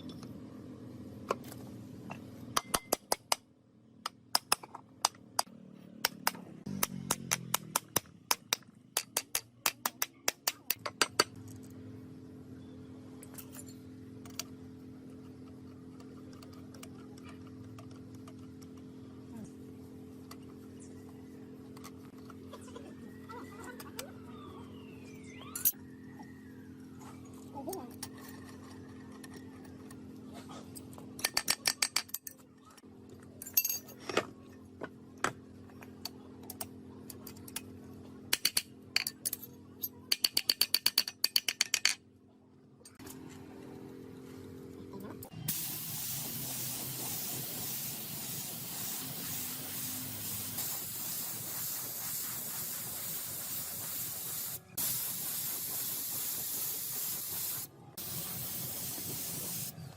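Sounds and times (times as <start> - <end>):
spray can ball rattling: 45.5 - 59.7
spray can hissing: 45.5 - 59.8.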